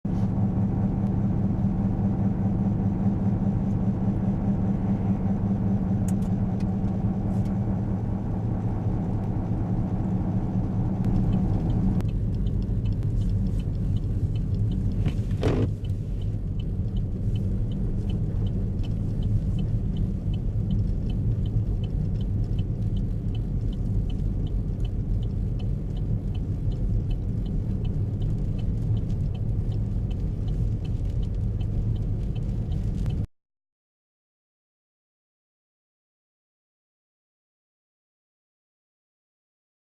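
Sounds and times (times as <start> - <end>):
car engine and road rumble: 0.0 - 33.3
faint regular ticking: 11.0 - 33.3.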